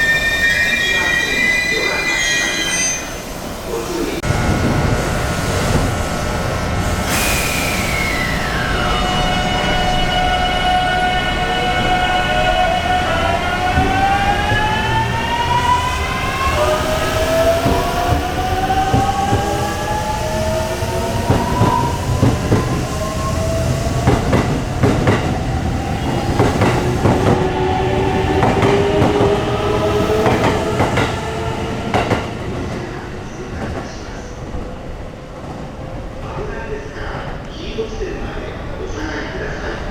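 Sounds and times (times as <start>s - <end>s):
train wheels clacking over rail joints: 12.8s - 15.8s, 16.4s - 19.7s.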